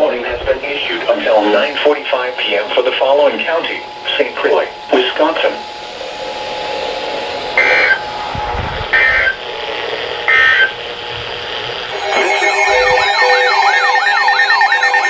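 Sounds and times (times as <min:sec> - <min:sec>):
radio static: 0:00.0 - 0:05.7, 0:07.6 - 0:13.4
steady tones: 0:00.0 - 0:15.0
data tone bursts: 0:07.6 - 0:08.0, 0:10.3 - 0:10.8, 0:11.9 - 0:15.0
rising and falling siren wail: 0:11.9 - 0:15.0.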